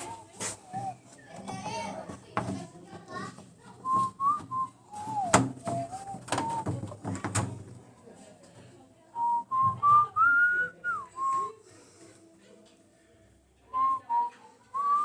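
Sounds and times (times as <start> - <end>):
person whistling a tune: 0.6 - 1.1, 3.8 - 6.7, 9.2 - 11.6, 13.7 - 15.0
sharp knocks: 1.6 - 7.8.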